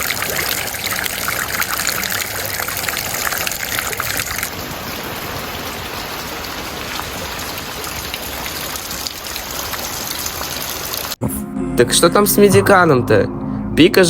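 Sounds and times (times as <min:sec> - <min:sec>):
steady rain falling: 0:00.0 - 0:11.2.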